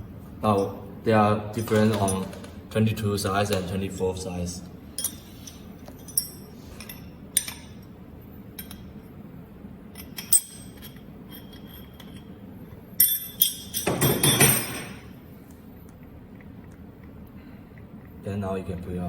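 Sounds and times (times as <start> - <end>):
metal spanners clinking: 5.0 - 7.8, 10.0 - 12.3, 13.0 - 15.1.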